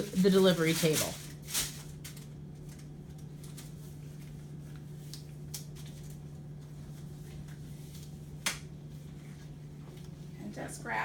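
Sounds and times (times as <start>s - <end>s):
packaging rustling: 0.0s - 4.9s.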